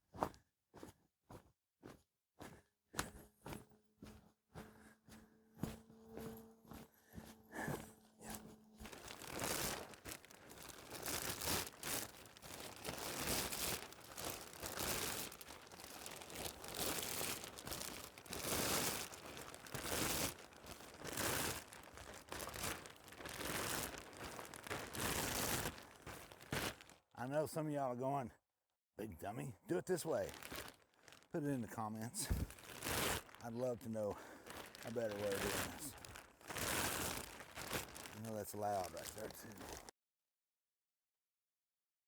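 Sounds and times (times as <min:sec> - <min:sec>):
plastic sheeting crinkling: 0:08.2 - 0:27.1, 0:29.8 - 0:39.9.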